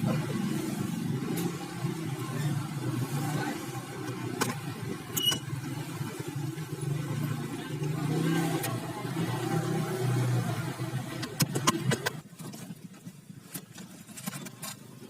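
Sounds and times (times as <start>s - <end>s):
engine humming: 0.0s - 12.7s
sharp clicks and knocks: 4.0s - 5.5s, 11.2s - 14.9s.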